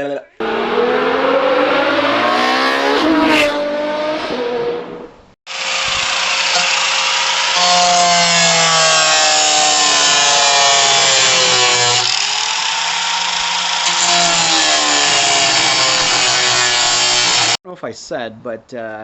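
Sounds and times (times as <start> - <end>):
angle grinder grinding metal: 5.5 - 17.6.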